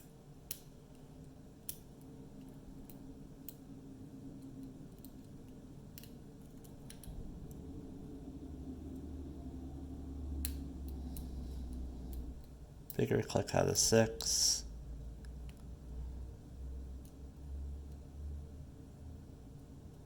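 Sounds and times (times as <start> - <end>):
small metallic lock pick clicks: 4.4 - 7.6.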